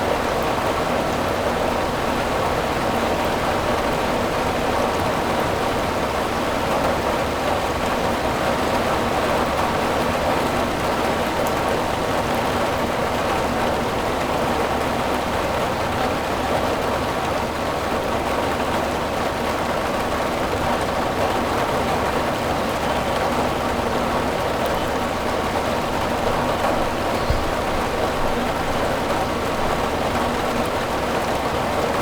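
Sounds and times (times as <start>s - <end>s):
rain on a metal roof: 0.0s - 32.0s.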